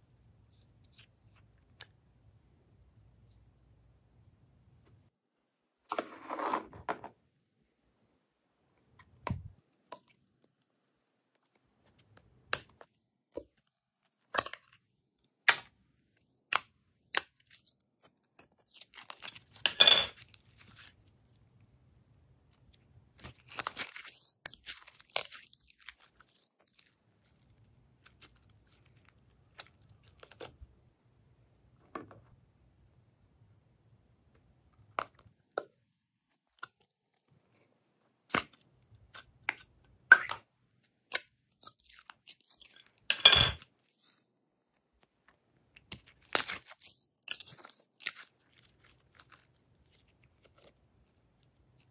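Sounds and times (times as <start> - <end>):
slime materials crunching and crackling: 23.1 - 30.6, 45.8 - 51.9.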